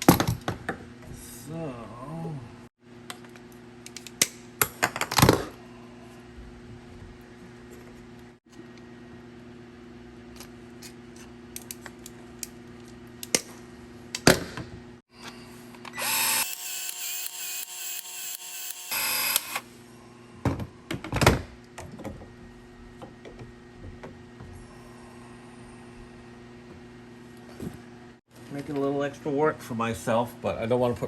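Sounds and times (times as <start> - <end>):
steady low hum: 0.8 - 4.6, 19.6 - 31.0
power tool running: 15.2 - 19.7.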